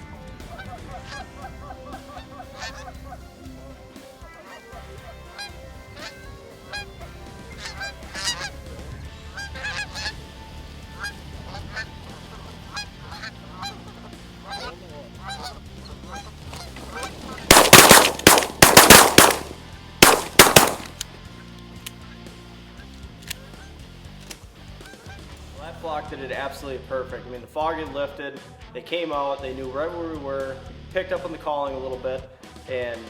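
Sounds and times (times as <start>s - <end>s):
geese honking: 0.5s - 3.2s, 4.5s - 8.6s, 9.3s - 10.2s, 12.7s - 20.9s
shotgun blasts: 17.5s - 21.0s.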